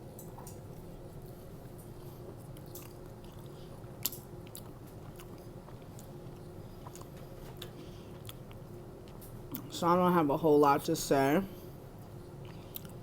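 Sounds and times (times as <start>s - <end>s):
faint steady hum: 0.0s - 13.0s
person chewing food: 0.4s - 9.7s, 12.0s - 13.0s.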